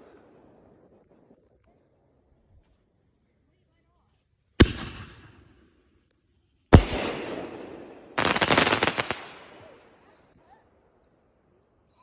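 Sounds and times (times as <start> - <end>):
firework crackling: 6.8 - 9.8.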